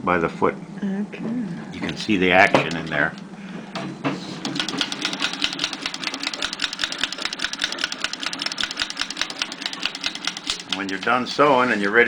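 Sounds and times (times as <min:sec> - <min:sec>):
treadle sewing machine clicking: 0:04.4 - 0:11.6.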